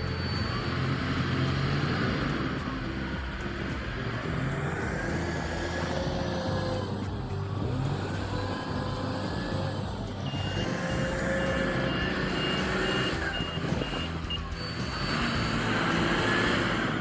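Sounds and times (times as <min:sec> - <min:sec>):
reversing alarm beeping: 0:00.0 - 0:01.8, 0:10.0 - 0:16.6
large diesel engine running: 0:00.0 - 0:17.0.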